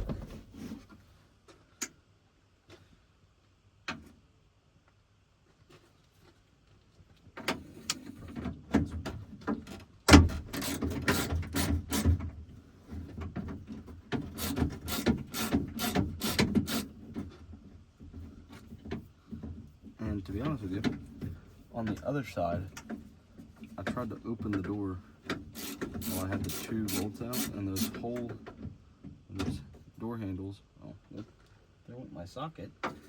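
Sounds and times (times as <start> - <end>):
ratchet clicking: 14.4 - 16.9, 25.6 - 28.0.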